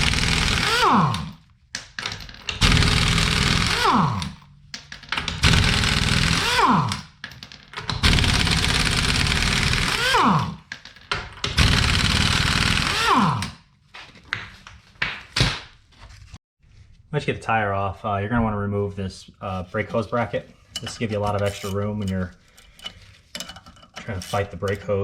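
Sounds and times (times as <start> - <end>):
impact wrench hammering: 0.0 - 1.4, 2.5 - 4.4, 5.2 - 7.2, 7.8 - 13.6
tool spinning down whine: 0.0 - 1.4, 2.6 - 4.4, 5.4 - 7.0, 8.0 - 10.6, 11.6 - 13.6.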